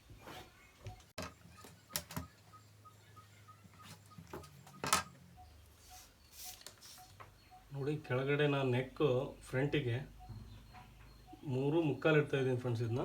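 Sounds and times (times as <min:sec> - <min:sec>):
scraping strokes on fabric: 0:05.8 - 0:07.2.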